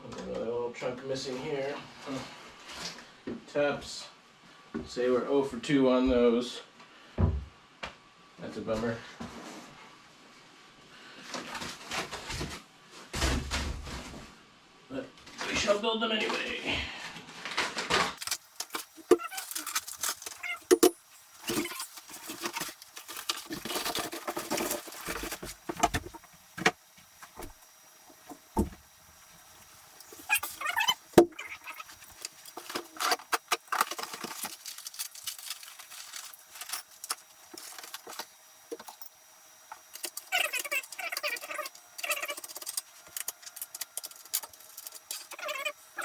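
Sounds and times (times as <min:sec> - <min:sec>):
parts knocking and clinking: 0:18.2 - 0:39.1, 0:39.7 - 0:45.7.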